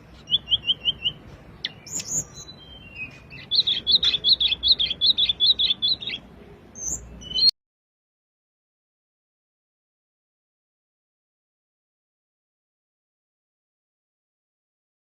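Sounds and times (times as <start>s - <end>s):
flycatcher chirping: 0.1s - 6.2s.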